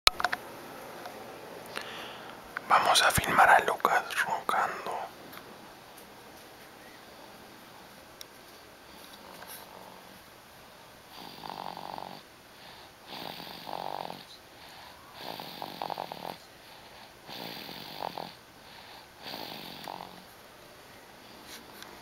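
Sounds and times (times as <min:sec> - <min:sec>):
person snoring: 0:02.7 - 0:05.1.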